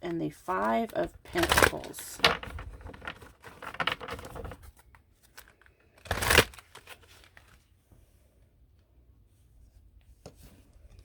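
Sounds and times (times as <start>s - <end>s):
cards shuffling: 0.5s - 7.6s.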